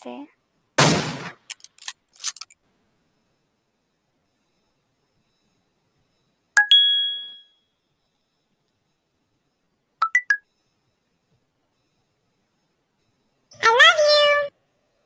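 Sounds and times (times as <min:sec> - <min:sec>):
two-note chime: 0:06.7 - 0:07.6.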